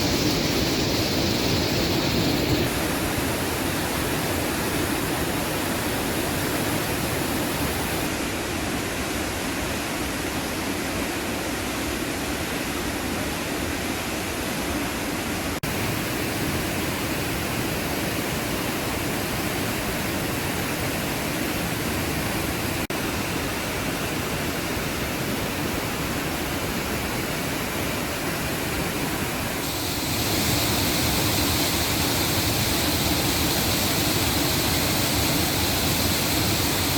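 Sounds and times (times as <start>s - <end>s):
waterfall rushing: 0.0s - 8.1s, 15.6s - 36.9s.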